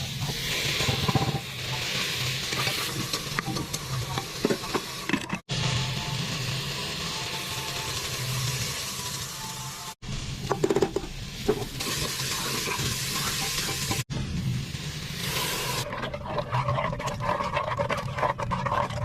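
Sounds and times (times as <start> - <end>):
food sizzling: 0.0 - 17.3
soup bubbling and clicking: 15.8 - 19.0.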